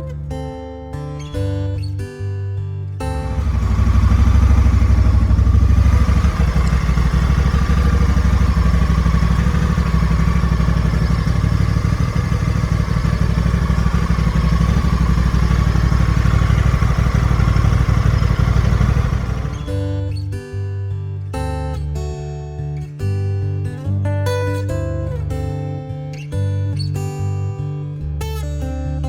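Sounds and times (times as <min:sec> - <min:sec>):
motorcycle engine running: 0:03.2 - 0:19.8.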